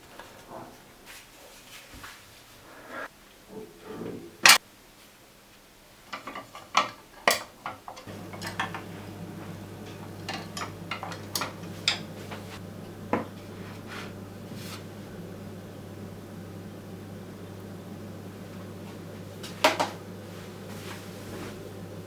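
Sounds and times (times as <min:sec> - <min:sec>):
steady low hum: 0:08.0 - 0:22.0.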